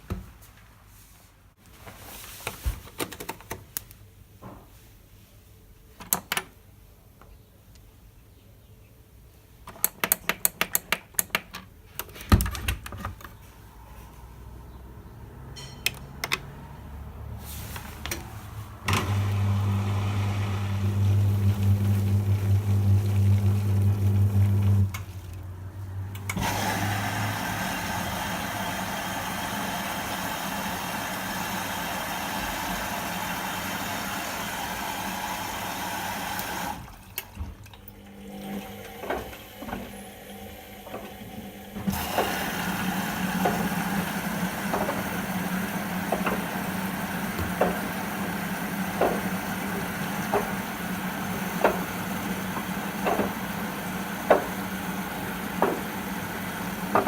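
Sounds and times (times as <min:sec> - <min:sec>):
washing machine motor humming: 0:18.7 - 0:57.0
washing machine drum clicks: 0:48.9 - 0:50.8, 0:51.6 - 0:53.6, 0:54.2 - 0:54.8.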